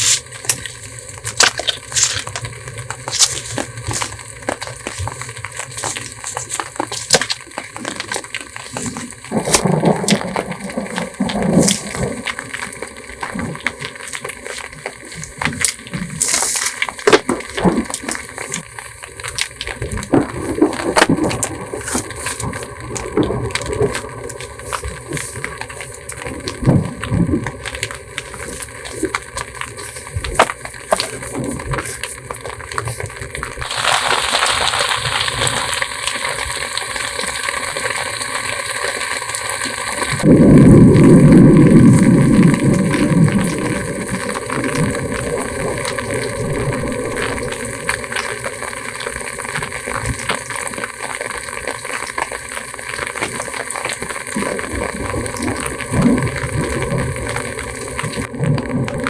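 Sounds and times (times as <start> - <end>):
sharp knocks and cracks: 0.0 - 35.8
heavy rain hissing: 0.0 - 59.0
low rumble of thunder: 9.3 - 13.9, 26.1 - 28.6, 40.2 - 48.3.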